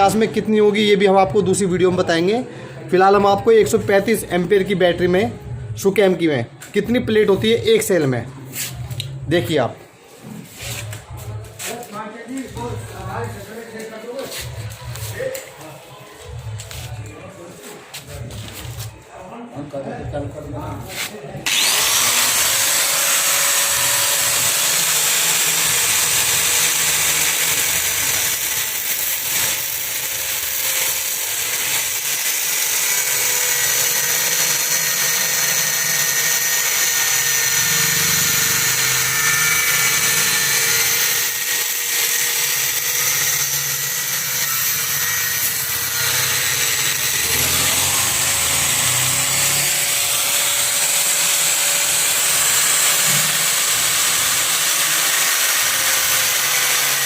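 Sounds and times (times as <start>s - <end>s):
power tool cutting plastic: 20.9s - 57.0s.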